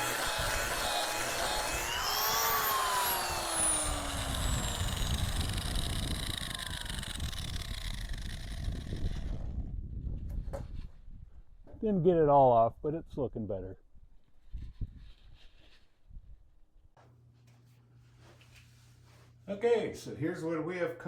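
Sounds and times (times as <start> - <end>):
electric grinder spinning down: 0.0 - 9.7.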